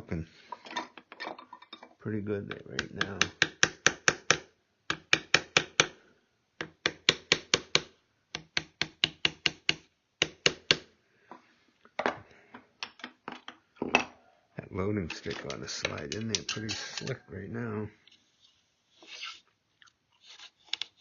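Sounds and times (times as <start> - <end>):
mallet tapping chisel into wood: 2.8 - 6.0, 6.6 - 10.8.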